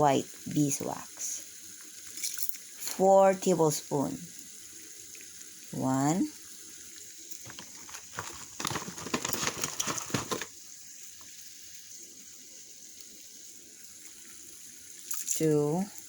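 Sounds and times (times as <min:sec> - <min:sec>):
faint steady hiss: 0:00.0 - 0:16.0
wax pellets clicking and rattling: 0:07.4 - 0:10.5.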